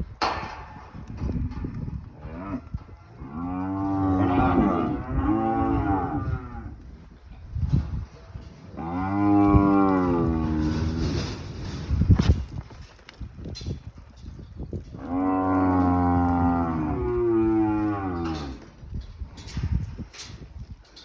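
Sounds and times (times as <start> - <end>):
cattle mooing: 2.2 - 6.7, 8.8 - 11.3, 15.0 - 18.7.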